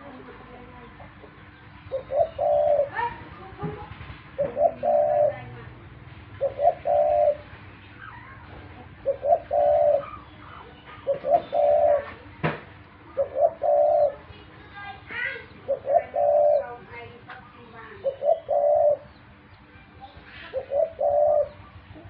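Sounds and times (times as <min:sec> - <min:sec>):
dove cooing: 0:01.9 - 0:03.2, 0:04.4 - 0:05.5, 0:06.4 - 0:12.3, 0:13.1 - 0:14.3, 0:15.4 - 0:16.9, 0:17.9 - 0:19.2, 0:20.4 - 0:22.0.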